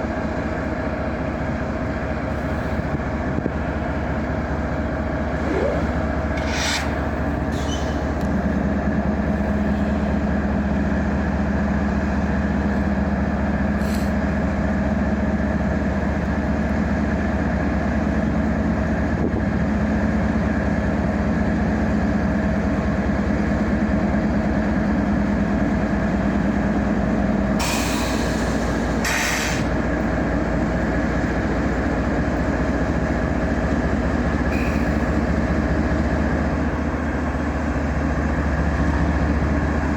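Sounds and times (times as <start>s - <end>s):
diesel train rumble: 0.0s - 39.9s
low tone: 5.1s - 8.7s
short hisses: 5.4s - 8.1s.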